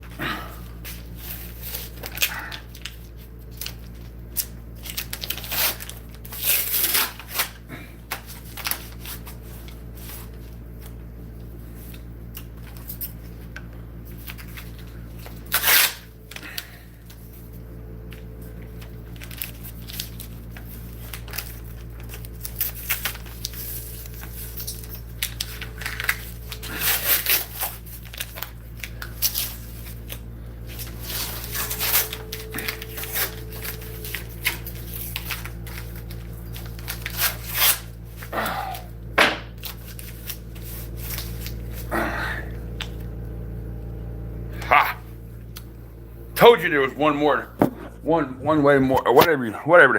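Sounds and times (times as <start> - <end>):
low electrical hum: 0.0 - 49.9
rustling and scraping: 39.6 - 41.9.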